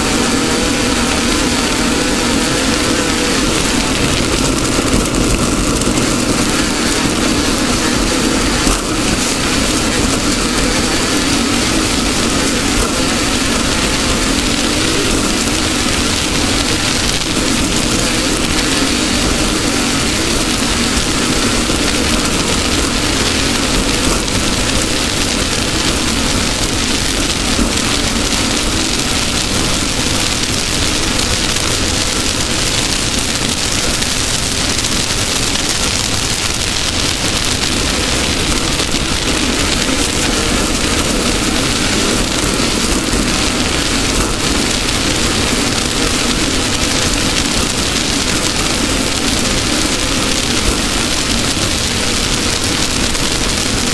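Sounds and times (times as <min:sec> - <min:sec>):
loud rush of noise: 0:00.0 - 0:53.9
race car engine running: 0:00.0 - 0:53.9.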